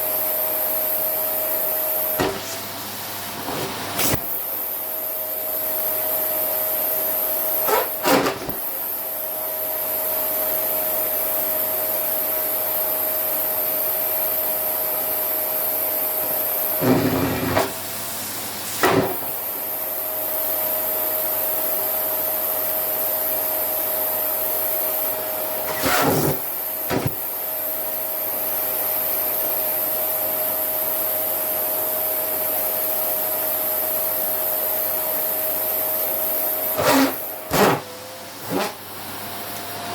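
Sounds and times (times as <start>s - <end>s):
vacuum cleaner whining: 1.6s - 4.9s, 6.5s - 9.2s, 16.1s - 20.9s, 24.8s - 27.5s, 35.2s - 39.9s.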